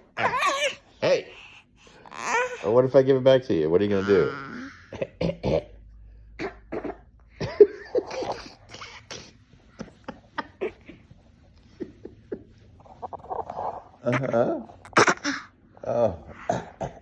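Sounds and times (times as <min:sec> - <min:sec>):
fake coughing: 0:04.9 - 0:11.1, 0:14.3 - 0:15.5, 0:16.2 - 0:17.0.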